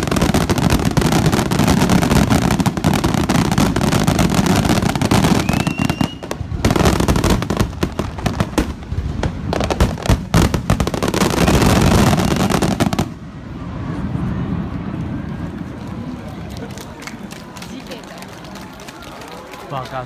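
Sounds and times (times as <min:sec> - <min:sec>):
fireworks booming bursts: 0:00.0 - 0:13.2
fireworks crackle: 0:00.0 - 0:13.2
firework whistle: 0:05.2 - 0:06.4.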